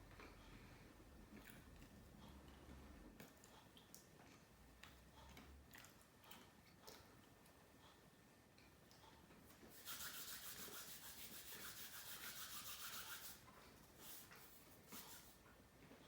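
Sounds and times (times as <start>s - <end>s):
faint rasping rubbing noise: 9.7s - 15.4s.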